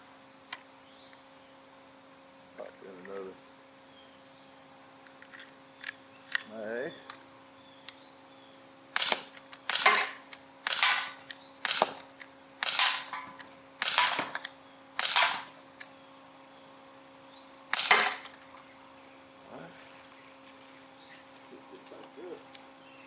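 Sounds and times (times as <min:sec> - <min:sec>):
air pistol shots popping: 0:09.0 - 0:15.9, 0:17.7 - 0:18.4.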